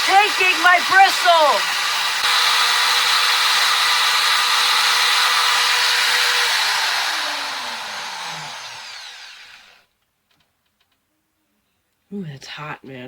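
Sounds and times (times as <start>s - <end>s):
power drill with wire brush whirring: 0.0s - 9.9s.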